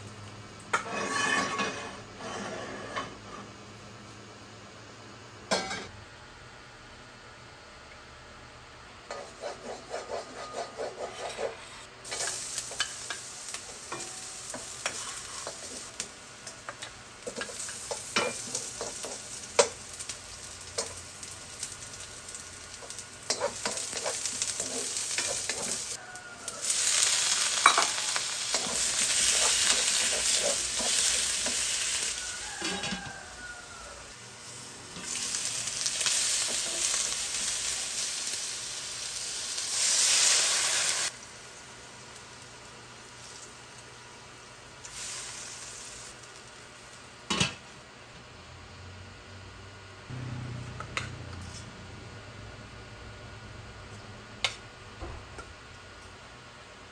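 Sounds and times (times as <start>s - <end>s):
food frying in a pan: 12.0s - 47.9s.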